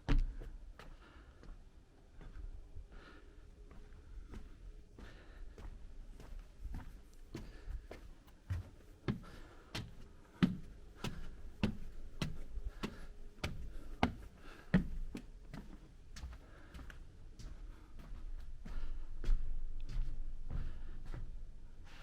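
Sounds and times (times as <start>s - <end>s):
footsteps on forest trail: 3.7s - 20.9s.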